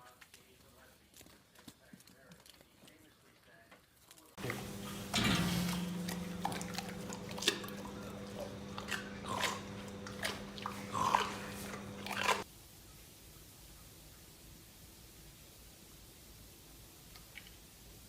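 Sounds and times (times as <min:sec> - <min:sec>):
crunching chewing: 0:00.0 - 0:12.4
steady low hum: 0:04.4 - 0:12.4.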